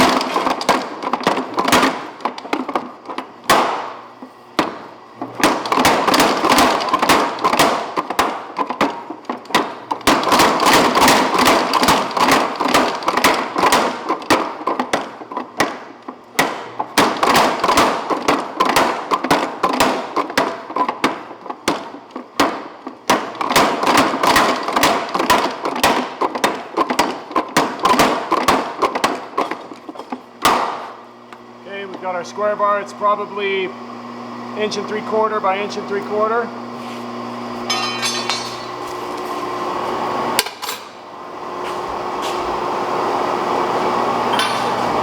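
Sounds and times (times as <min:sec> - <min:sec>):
power hammer pounding steel: 0:37.7 - 0:39.0.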